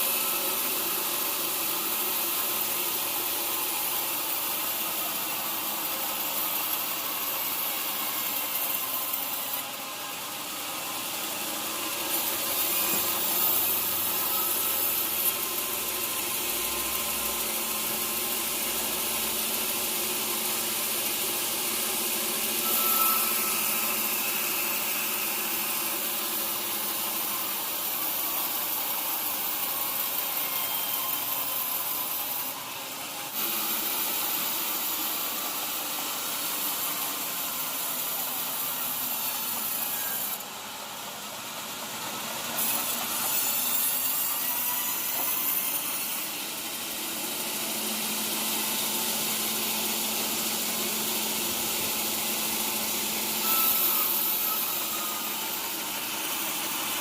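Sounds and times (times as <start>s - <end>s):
saw cutting through log: 0.0s - 57.0s.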